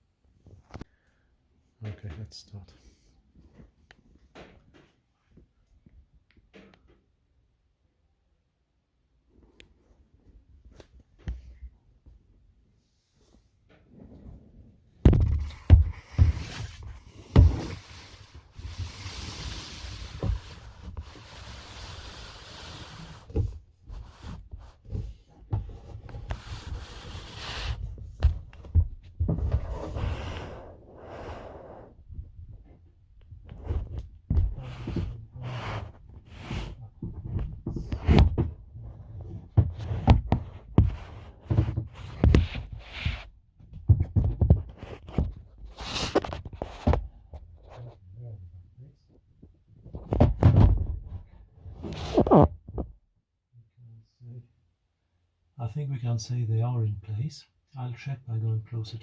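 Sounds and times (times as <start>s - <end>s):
knocks and thumps on plastic hull: 28.0s - 29.6s, 37.0s - 38.7s, 39.3s - 42.6s, 43.6s - 45.4s, 49.9s - 51.2s.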